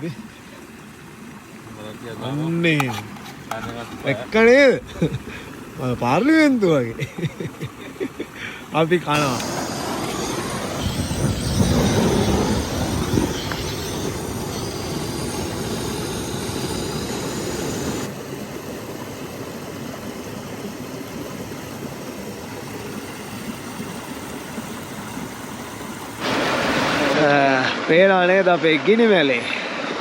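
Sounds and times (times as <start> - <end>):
waterfall rushing: 0.0 - 0.8, 7.8 - 30.0.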